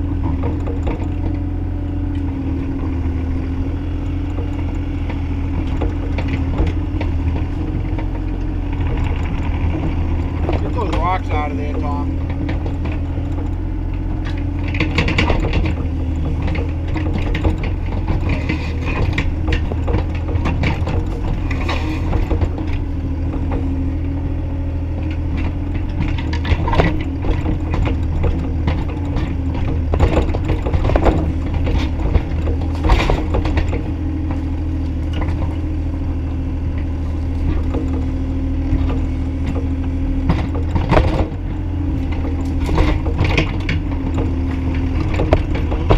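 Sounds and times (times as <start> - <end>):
excavator diesel engine running: 0.0 - 45.9
hydraulic hum: 0.0 - 45.9.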